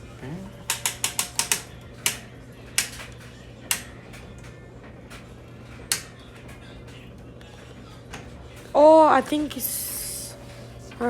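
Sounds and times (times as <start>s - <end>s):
sharp metallic clicks: 0.7s - 2.2s.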